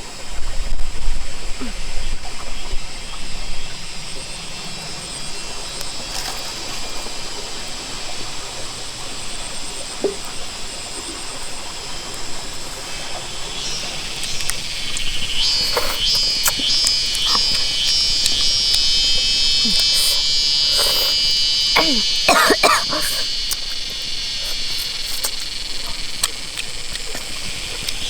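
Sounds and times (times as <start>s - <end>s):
high-pitched insect chorus: 0.0s - 28.0s
pulsing insect buzz: 11.6s - 28.0s
faint outdoor background: 12.2s - 28.0s.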